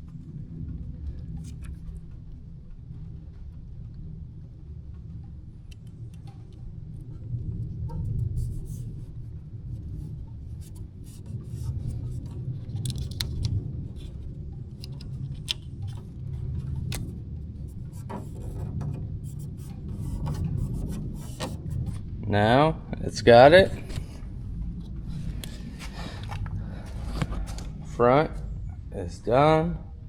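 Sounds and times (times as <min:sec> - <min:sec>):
steady low rumble: 0:00.0 - 0:30.0
decal crinkling and rubbing: 0:23.6 - 0:28.0.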